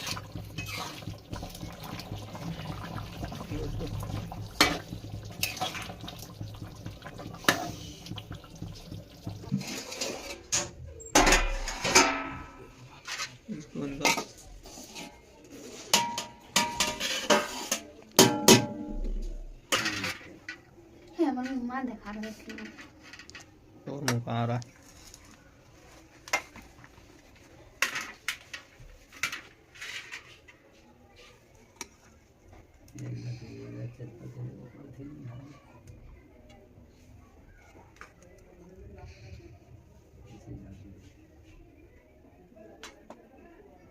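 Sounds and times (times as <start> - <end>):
metal utensils clinking on pot: 0.0 - 2.2, 4.3 - 6.1, 9.3 - 15.1, 15.8 - 19.1
running water splashing: 0.0 - 10.2.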